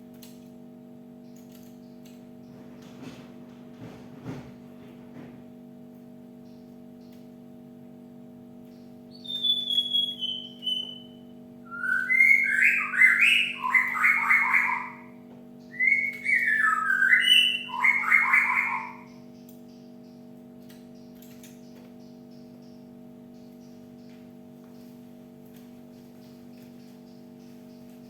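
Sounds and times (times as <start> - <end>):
steady low hum: 0.0 - 28.0
bird whistle and choppy notes: 9.1 - 19.2.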